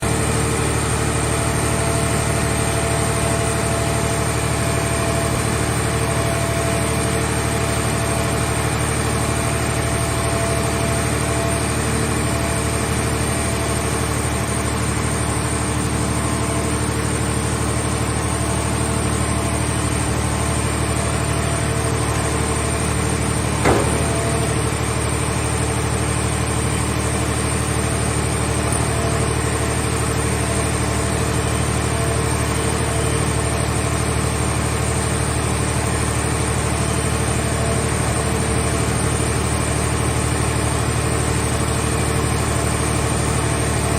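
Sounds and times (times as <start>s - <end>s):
hydraulic power unit running: 0.0s - 43.9s
metal clank: 23.6s - 24.9s.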